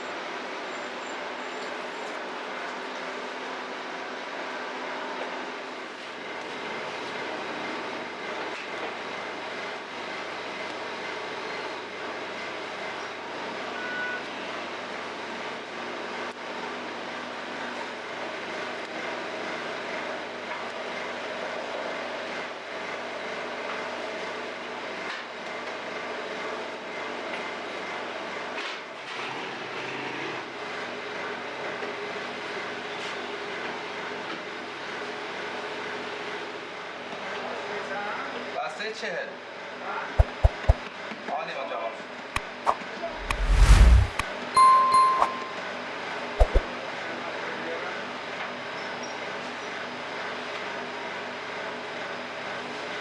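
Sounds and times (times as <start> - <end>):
brief rush of noise: 40.2 - 40.8, 43.2 - 44.2, 46.4 - 46.6
held tones: 44.0 - 45.6.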